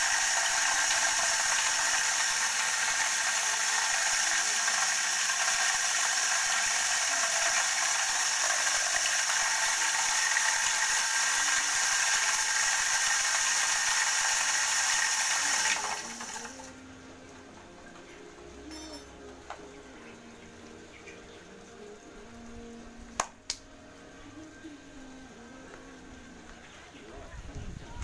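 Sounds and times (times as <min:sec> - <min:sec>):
corn grinder motor running: 0:00.0 - 0:16.8.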